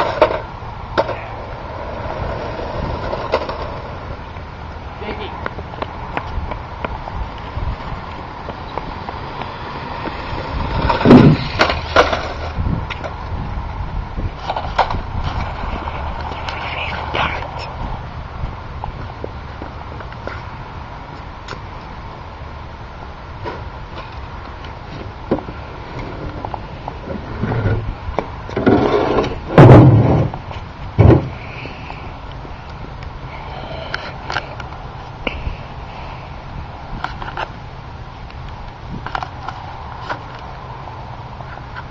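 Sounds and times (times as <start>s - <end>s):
toy car rising rush: 9.7s - 12.6s.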